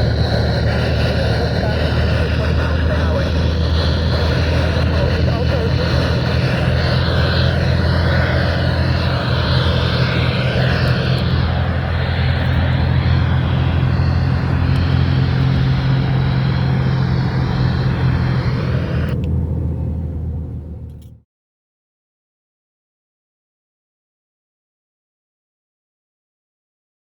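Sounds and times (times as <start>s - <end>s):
radio static hiss: 0.0s - 19.2s.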